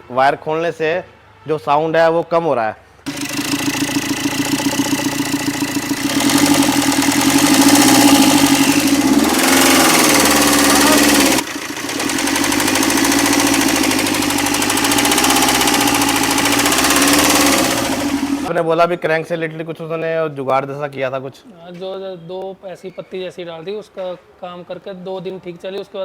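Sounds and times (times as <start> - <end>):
diesel engine knocking: 3.1 - 18.5.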